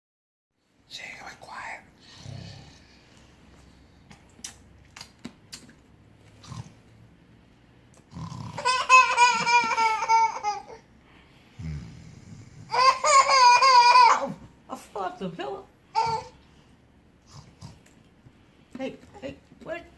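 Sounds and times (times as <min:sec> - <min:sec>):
person pretend snoring: 0:08.1 - 0:08.7, 0:11.5 - 0:12.7.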